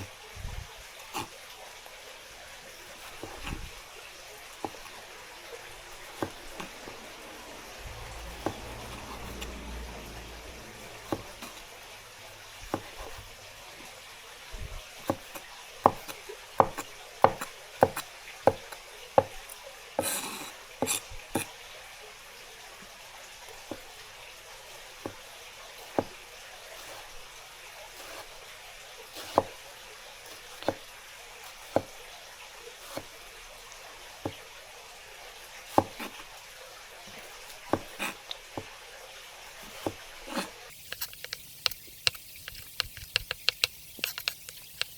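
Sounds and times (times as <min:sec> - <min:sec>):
faint sizzle: 0:00.0 - 0:44.9
utensil scraping pan: 0:39.6 - 0:44.9.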